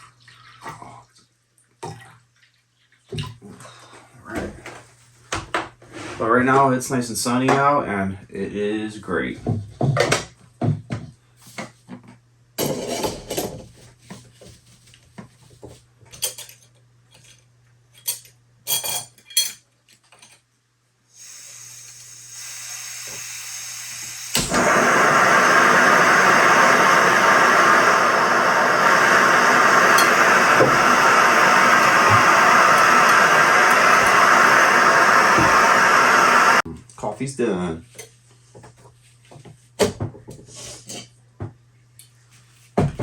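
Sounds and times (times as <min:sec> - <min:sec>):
loud steady hiss: 0:21.1 - 0:36.6.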